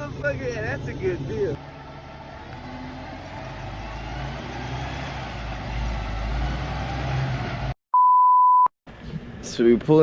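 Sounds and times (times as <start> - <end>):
vehicle engine and road rumble: 0.0 - 7.8, 8.9 - 10.0.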